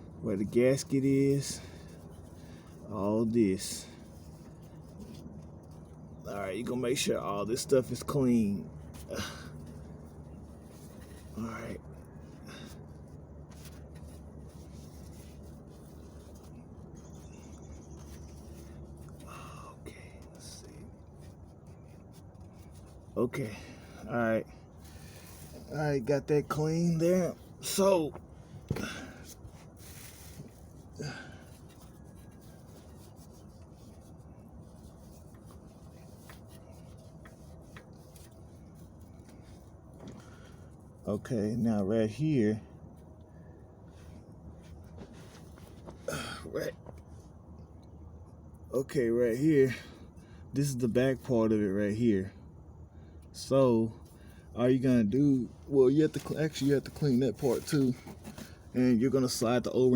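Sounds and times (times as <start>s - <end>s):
low steady rumble: 0.0s - 59.9s
steady low hum: 0.0s - 59.9s
hands rubbing and handling: 29.2s - 40.2s, 56.0s - 59.4s.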